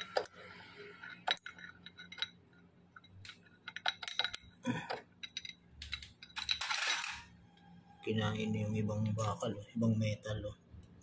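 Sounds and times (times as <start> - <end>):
metal parts and tools clinking: 0.0 - 7.4.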